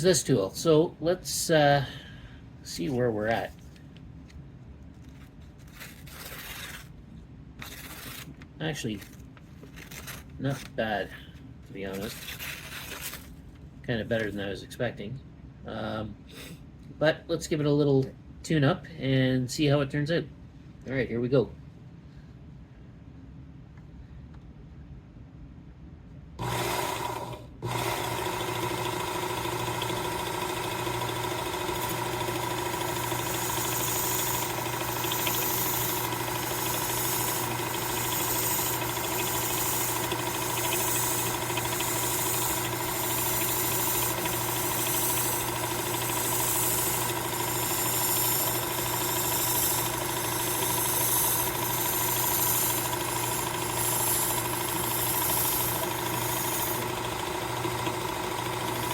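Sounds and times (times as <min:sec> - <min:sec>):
knife grinding on belt: 0:05.0 - 0:07.0, 0:07.6 - 0:08.3, 0:09.0 - 0:10.7, 0:12.0 - 0:13.3
sharpener motor hum: 0:26.4 - 0:58.9.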